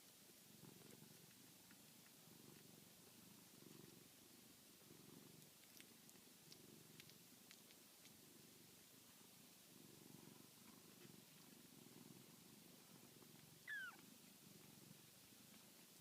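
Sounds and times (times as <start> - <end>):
kitten purring: 0.0 - 16.0
kitten squeak: 13.7 - 14.0.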